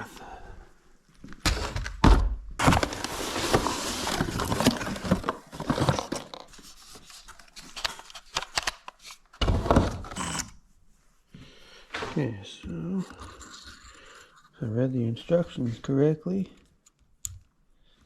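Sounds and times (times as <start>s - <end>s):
box thunks: 1.4s - 6.1s
cardboard rustling and scraping: 2.6s - 8.3s.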